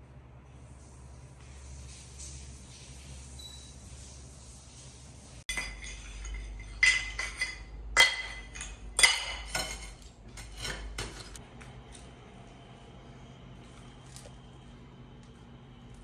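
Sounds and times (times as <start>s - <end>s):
kitchenware clinking together: 5.5s - 11.4s.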